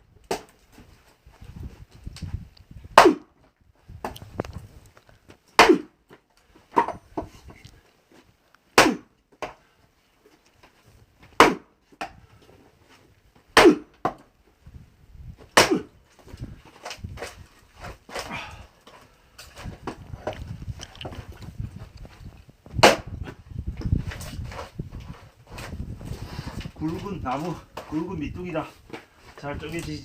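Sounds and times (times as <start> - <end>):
axe splitting wood: 0.2 - 0.6, 3.0 - 3.3, 5.6 - 5.9, 6.7 - 7.3, 8.7 - 9.6, 11.3 - 12.2, 13.6 - 14.3, 15.4 - 16.0, 16.6 - 20.3, 22.7 - 25.8.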